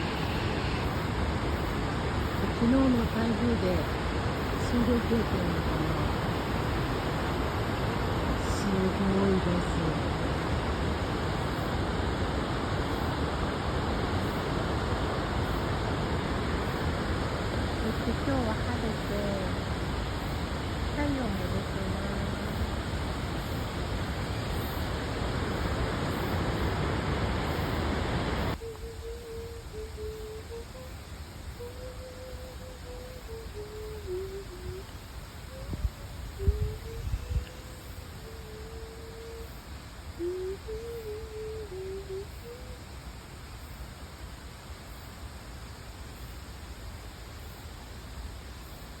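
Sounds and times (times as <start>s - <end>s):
waterfall rushing roar: 0.0s - 30.8s.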